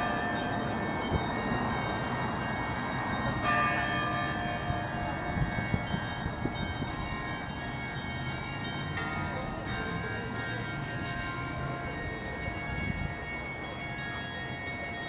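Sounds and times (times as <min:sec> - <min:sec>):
church bells ringing: 0:00.0 - 0:15.0.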